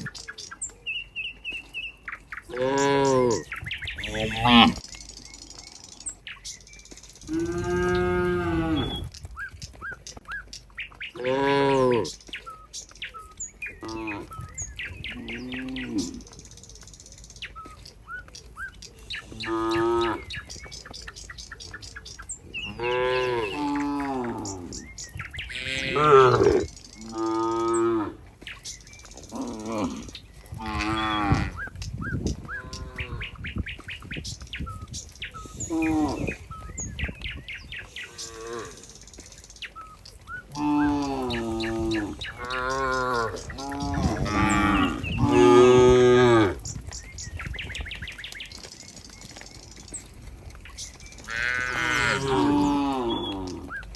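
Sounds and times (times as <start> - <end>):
small birds chirping: 0.0 - 53.9
cows mooing: 2.5 - 4.8, 7.2 - 9.1, 11.2 - 12.2, 13.8 - 16.3, 19.2 - 20.4, 22.6 - 28.4, 29.2 - 31.7, 32.4 - 33.4, 35.5 - 36.5, 37.9 - 39.2, 40.5 - 47.0, 51.2 - 53.9.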